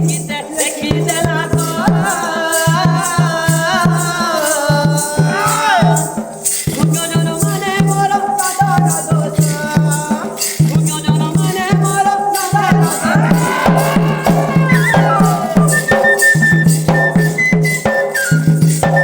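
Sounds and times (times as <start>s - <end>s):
jingling percussion: 0.0s - 19.0s
steady drumming: 12.5s - 17.3s
flute-like melody: 12.8s - 19.0s.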